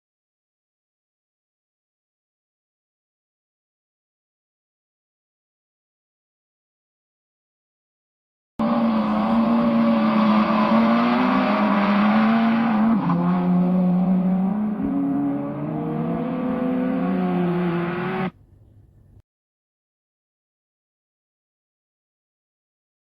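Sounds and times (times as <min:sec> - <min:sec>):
racing car engine: 0:08.6 - 0:18.4.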